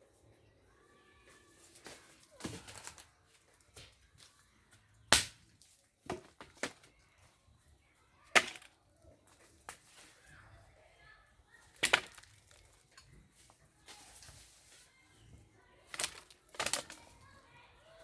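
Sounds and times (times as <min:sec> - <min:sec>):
firewood cracking: 0:11.7 - 0:13.1, 0:15.9 - 0:17.4.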